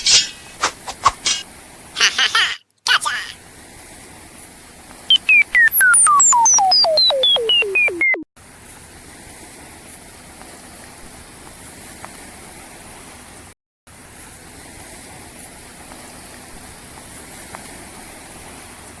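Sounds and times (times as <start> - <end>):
comedic falling-pitch tone: 5.1 - 8.2.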